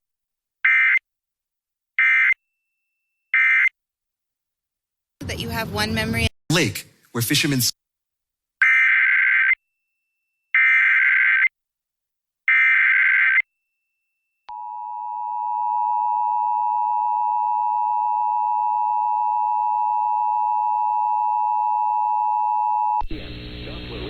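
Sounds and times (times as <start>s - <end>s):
buzzy digital data bursts: 23.1s - 24.0s.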